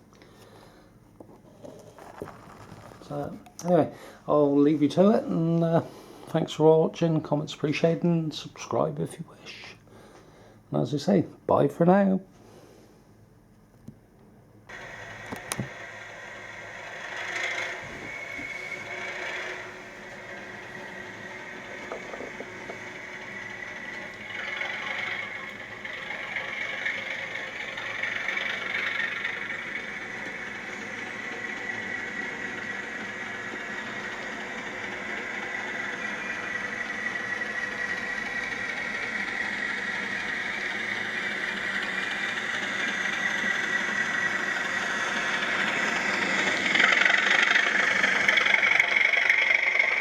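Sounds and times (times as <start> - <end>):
wheel and track rumble: 1.1 - 8.8, 14.7 - 50.0
model train motor whine: 14.7 - 50.0.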